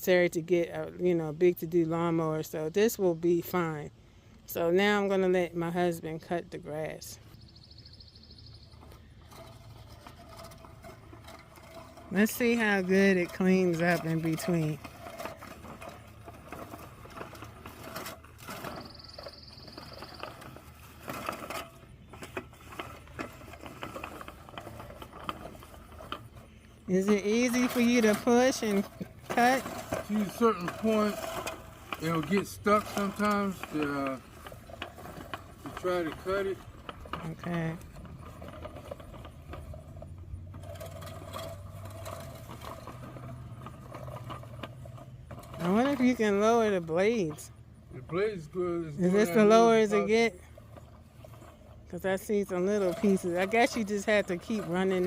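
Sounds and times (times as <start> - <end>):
reel mower blades whirring: 0.0 - 55.0.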